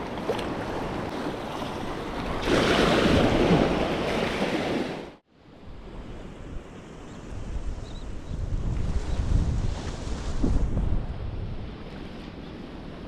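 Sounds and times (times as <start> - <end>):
ocean surf washing: 0.0 - 13.0
wind buffeting microphone: 5.6 - 13.0.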